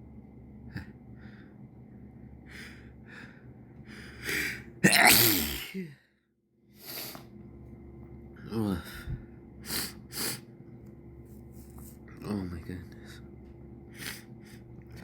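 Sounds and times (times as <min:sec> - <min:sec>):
loud voiced sneeze: 0:04.8 - 0:05.9
person sniffing: 0:06.8 - 0:07.2, 0:09.7 - 0:10.4.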